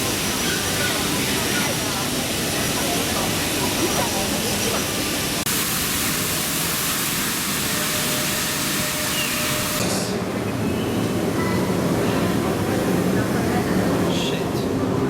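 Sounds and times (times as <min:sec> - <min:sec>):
loud steady hiss: 0:00.0 - 0:10.0.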